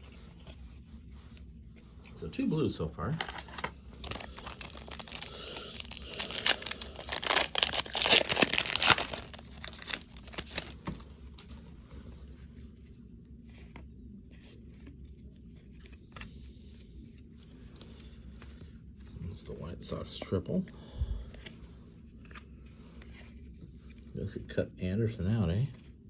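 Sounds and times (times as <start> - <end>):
cards rustling and clicking: 3.1 - 12.8, 20.0 - 24.1
wrapper tearing and crinkling: 3.2 - 11.1.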